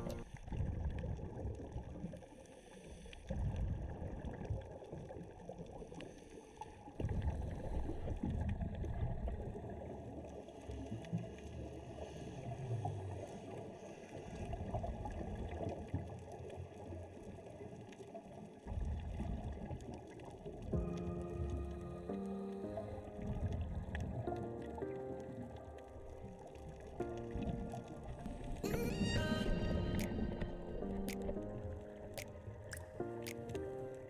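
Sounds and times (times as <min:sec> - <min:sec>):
rushing gurgling water: 0:18.5 - 0:33.5.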